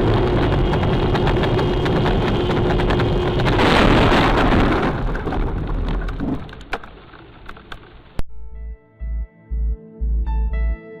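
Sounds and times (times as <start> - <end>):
car road and engine noise: 0.0 - 3.9.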